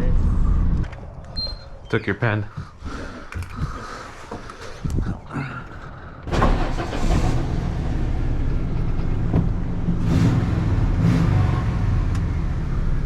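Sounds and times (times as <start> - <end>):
truck engine starting and rumbling: 4.6 - 13.0.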